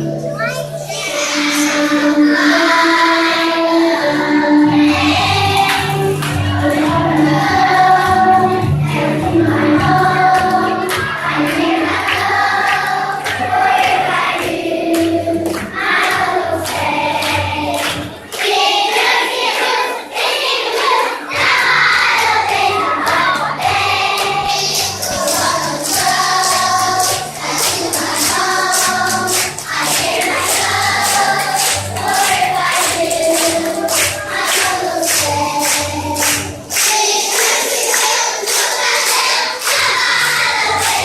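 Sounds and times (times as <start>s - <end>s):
choir singing: 0.9s - 41.0s.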